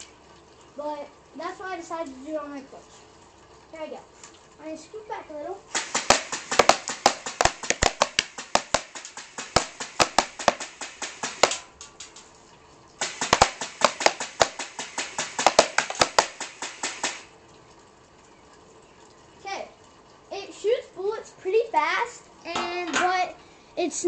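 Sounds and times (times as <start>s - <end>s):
airsoft gun firing rapid shots: 5.7s - 11.7s, 13.0s - 17.3s.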